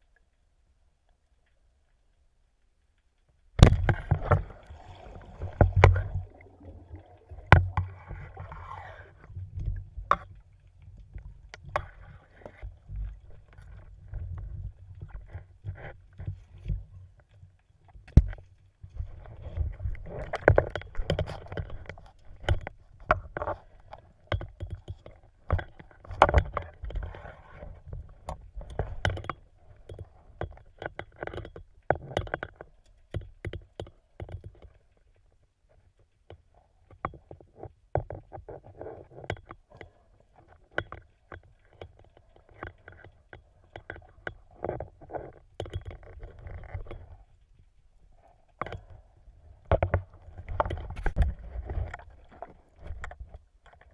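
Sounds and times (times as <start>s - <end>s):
water sloshing and splashing: 3.6s - 33.4s, 38.1s - 53.9s
sharp knocks and clicks: 28.7s - 34.8s.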